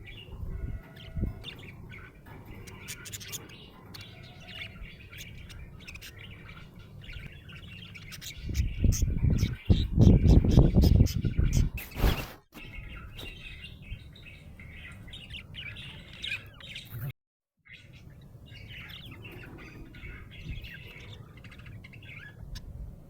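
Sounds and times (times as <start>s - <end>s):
budgerigar chirping and warbling: 17.7s - 22.7s.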